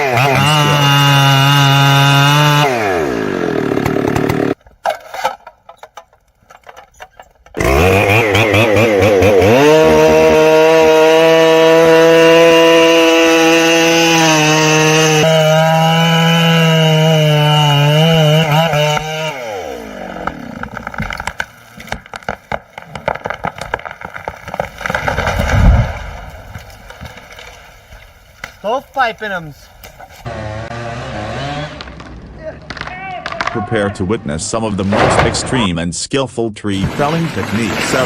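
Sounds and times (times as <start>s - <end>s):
chainsaw cutting wood: 0.0s - 4.6s, 7.5s - 28.6s, 29.9s - 33.5s.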